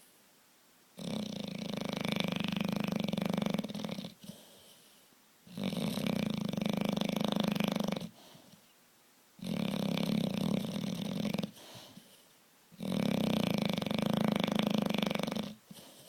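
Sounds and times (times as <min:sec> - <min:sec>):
dog snoring: 0:01.0 - 0:04.7, 0:05.4 - 0:08.6, 0:09.4 - 0:16.0
dog breathing quietly: 0:02.7 - 0:06.5, 0:07.7 - 0:08.8, 0:09.6 - 0:12.4, 0:15.4 - 0:16.0.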